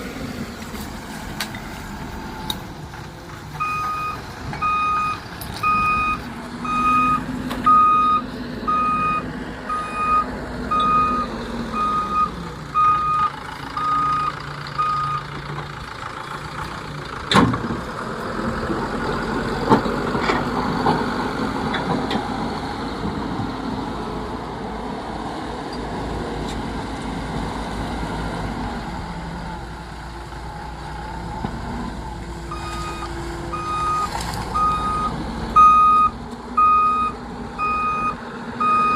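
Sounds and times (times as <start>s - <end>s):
diesel engine running: 0.0s - 38.9s
reversing alarm beeping: 3.6s - 15.3s, 32.5s - 38.9s.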